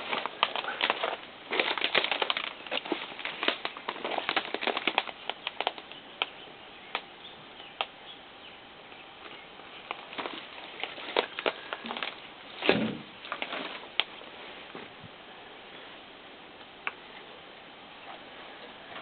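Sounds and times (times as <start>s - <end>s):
twigs snapping underfoot: 0.0s - 7.1s, 9.2s - 14.2s.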